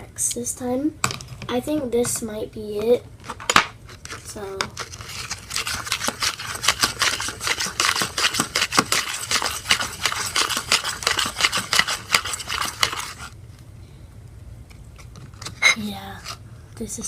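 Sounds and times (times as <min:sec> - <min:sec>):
slime stirred in a bowl: 0:03.2 - 0:13.4.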